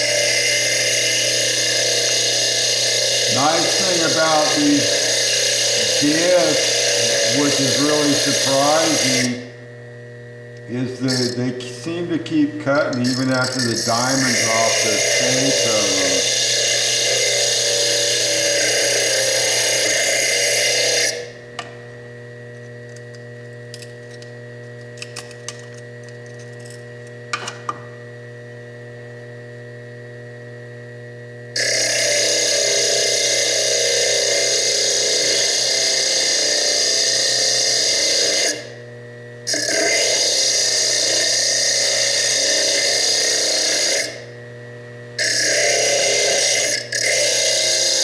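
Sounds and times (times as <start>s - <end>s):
disc grinding into stone: 0.0s - 9.6s, 10.5s - 21.4s, 31.6s - 38.8s, 39.5s - 44.3s, 45.2s - 48.0s
lathe humming: 0.0s - 26.2s, 31.6s - 38.9s, 39.5s - 48.0s.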